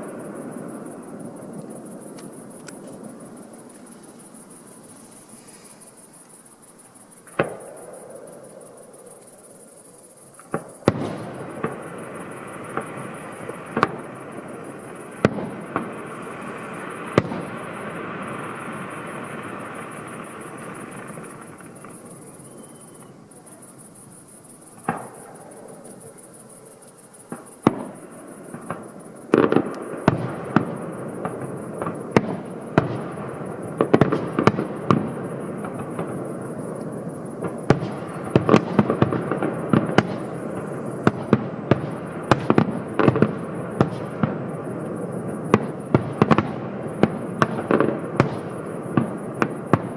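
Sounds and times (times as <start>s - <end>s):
firework crackling: 0.0s - 49.9s
firework shells bursting with bangs: 6.8s - 9.4s, 10.3s - 23.2s, 24.7s - 26.2s, 27.2s - 49.9s.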